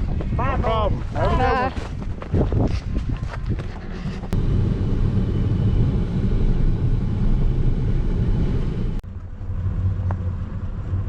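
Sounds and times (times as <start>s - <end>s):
vehicle engine running: 4.3s - 11.0s.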